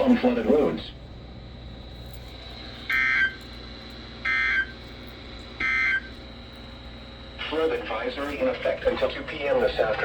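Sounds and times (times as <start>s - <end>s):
radio hiss: 0.0s - 1.0s, 7.3s - 10.0s.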